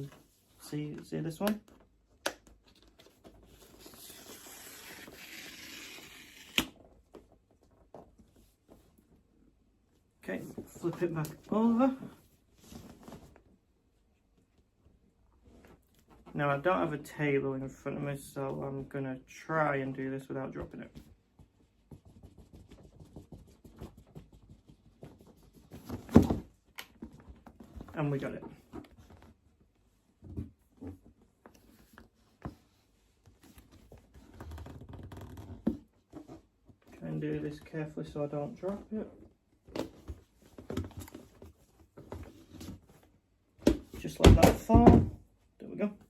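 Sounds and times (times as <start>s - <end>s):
cardboard tear strip ripping: 3.8s - 6.8s
box thud: 43.6s - 45.2s.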